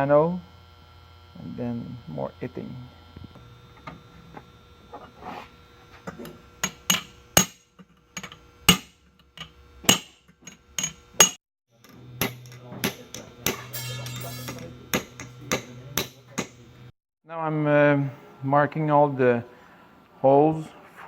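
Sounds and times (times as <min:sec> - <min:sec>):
hammer striking metal: 0:10.8 - 0:16.6.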